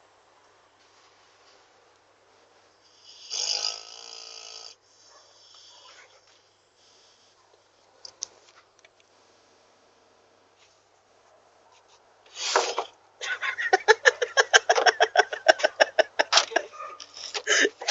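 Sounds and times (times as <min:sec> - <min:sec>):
snort or sneeze: 0:03.1 - 0:04.8, 0:12.3 - 0:12.9.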